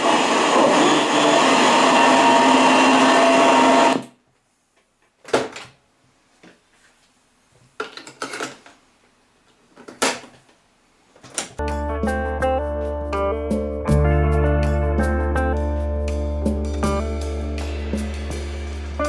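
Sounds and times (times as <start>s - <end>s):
loud noisy hiss: 0.0s - 4.0s, 17.0s - 19.0s
music: 11.6s - 19.0s.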